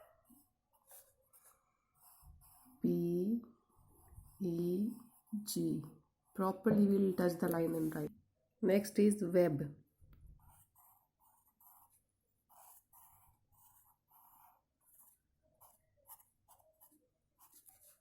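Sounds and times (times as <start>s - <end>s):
pen scratching while writing: 0.0s - 3.0s, 10.3s - 18.0s.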